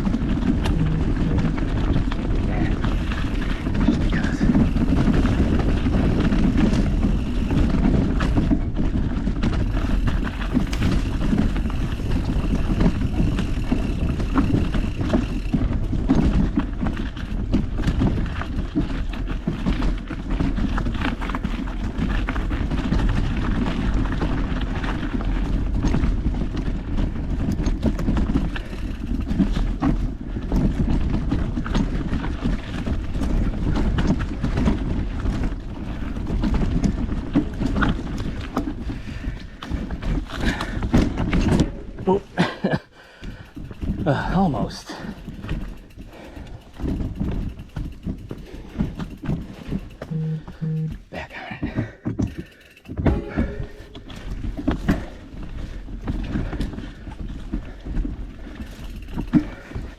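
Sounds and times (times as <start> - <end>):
bike knocks and rattles: 0.0 - 59.9
bike tyres and frame rumbling: 0.0 - 59.9.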